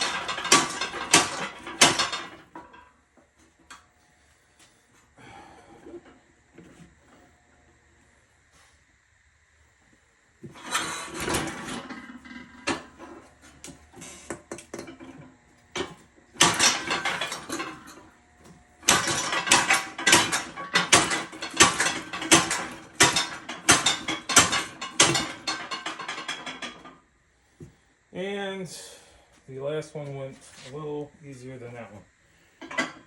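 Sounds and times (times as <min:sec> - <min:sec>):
metal tire tools clanking and scraping: 0:00.0 - 0:02.9, 0:10.4 - 0:27.0, 0:32.6 - 0:33.0.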